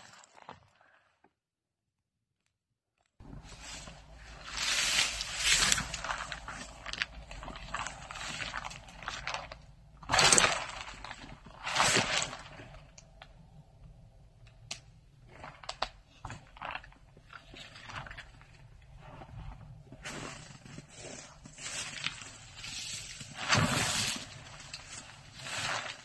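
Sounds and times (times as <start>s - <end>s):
footsteps crunching on snow: 3.3s - 6.8s.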